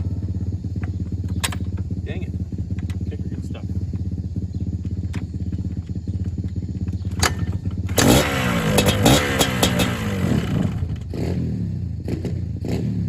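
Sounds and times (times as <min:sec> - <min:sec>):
two-stroke engine revving: 0:00.0 - 0:13.0
clattering clicks: 0:02.7 - 0:03.1.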